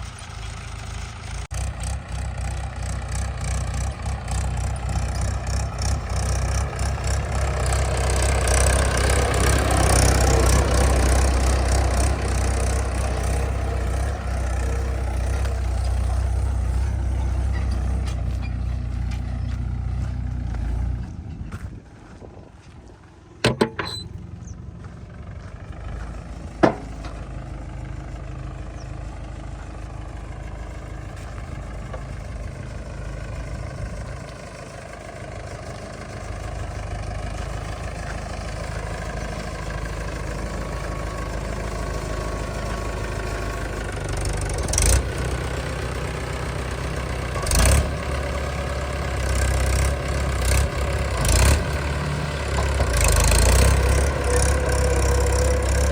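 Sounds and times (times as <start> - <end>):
heavy diesel engine running: 0.0 - 55.9
sharp knocks: 26.6 - 27.2.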